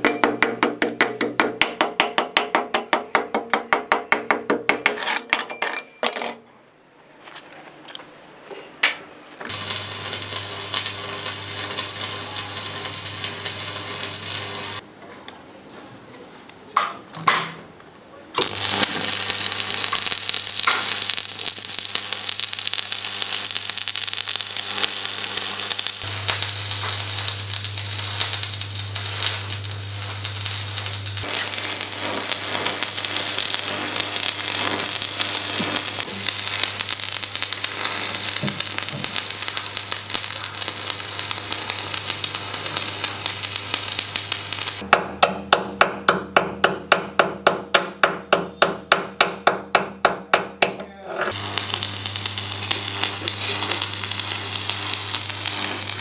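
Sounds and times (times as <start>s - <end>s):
hammer striking metal: 0.0s - 6.7s, 44.8s - 50.9s
welding arc crackling sizzle: 9.4s - 14.8s, 18.4s - 44.9s, 51.3s - 56.0s.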